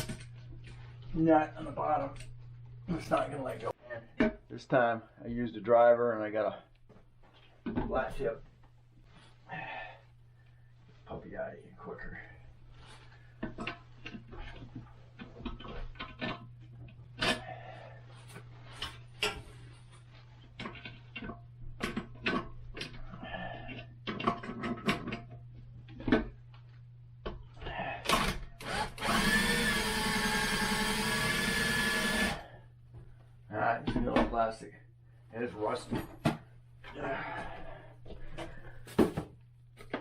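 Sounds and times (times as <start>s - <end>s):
power driver running: 28.1s - 32.5s.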